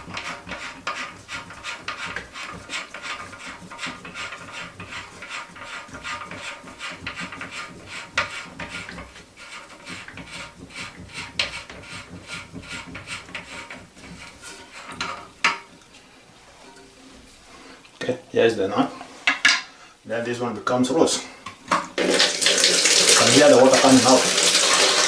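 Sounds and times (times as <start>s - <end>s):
plastic threads scraping: 22.0s - 25.0s.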